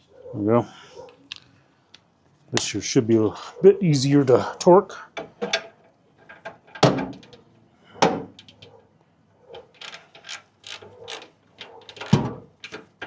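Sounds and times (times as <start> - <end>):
torque wrench ratchet clicking: 9.8 - 11.3.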